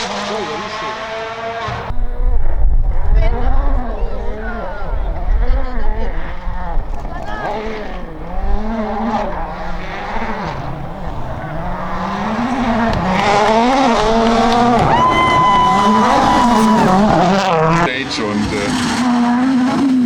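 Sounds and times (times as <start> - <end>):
rally car engine revving: 0.0 - 20.0
steady high whistling tone: 8.0 - 17.8.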